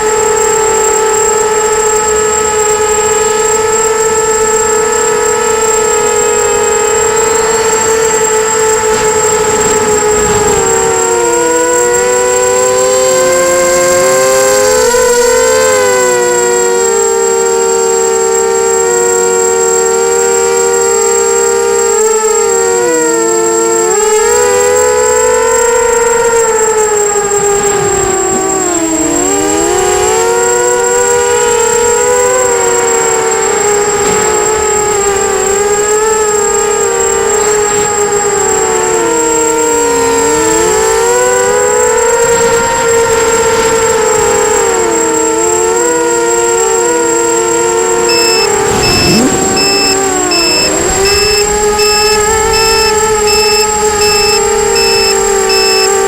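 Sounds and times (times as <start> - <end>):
drone motors whining: 0.0 - 56.0
steady high whistle: 48.0 - 56.0.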